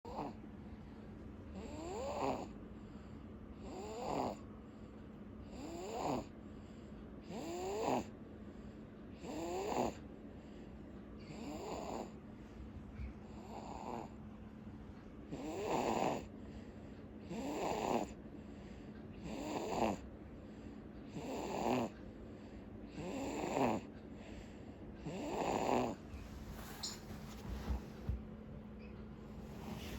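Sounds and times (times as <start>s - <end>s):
steady low hum: 0.0s - 29.9s
baby snoring: 0.1s - 0.4s, 1.6s - 2.6s, 3.6s - 4.5s, 5.4s - 6.4s, 7.2s - 8.1s, 9.2s - 10.0s, 11.2s - 12.2s, 13.2s - 14.2s, 15.3s - 16.3s, 17.2s - 18.2s, 19.2s - 20.1s, 21.1s - 22.0s, 22.9s - 23.9s, 25.0s - 27.0s.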